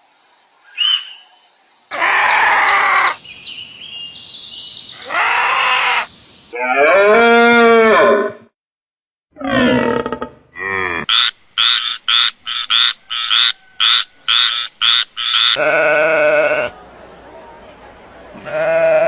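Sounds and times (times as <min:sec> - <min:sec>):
animal calls: 0:01.9 - 0:03.2, 0:04.9 - 0:08.3, 0:09.4 - 0:16.7.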